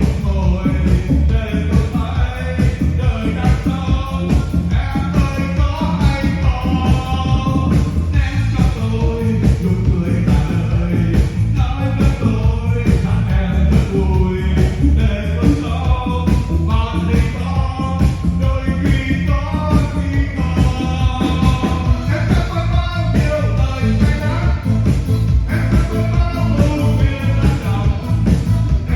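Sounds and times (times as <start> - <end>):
backing music with steady beat: 0.0 - 28.9
person singing: 0.0 - 28.9.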